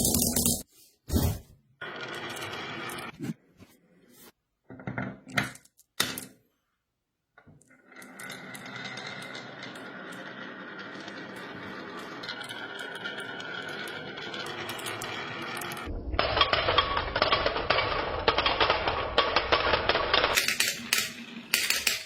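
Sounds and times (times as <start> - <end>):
marbles clicking and clacking: 7.7 - 22.0
marbles rattling rolling: 7.8 - 22.0.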